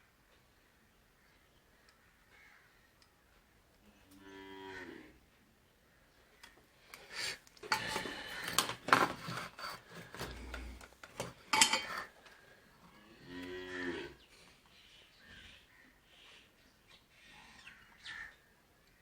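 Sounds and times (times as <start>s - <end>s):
scraping and rubbing: 7.2s - 12.2s.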